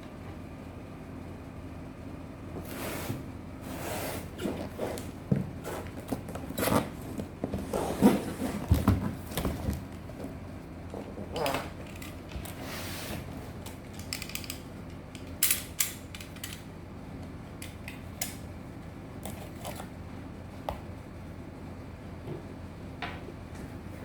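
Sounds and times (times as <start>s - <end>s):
hard parts clicking and rattling: 11.4s - 12.5s, 13.6s - 16.7s.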